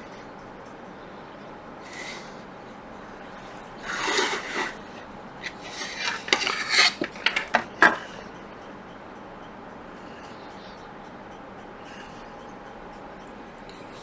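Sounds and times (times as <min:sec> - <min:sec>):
small tool scraping circuit board: 0:03.8 - 0:04.8, 0:05.4 - 0:08.0.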